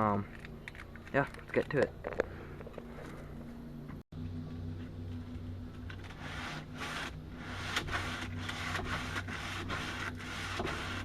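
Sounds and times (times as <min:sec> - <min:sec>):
steady low hum: 0:00.0 - 0:11.0
sandpaper rubbing on wood: 0:06.2 - 0:11.0.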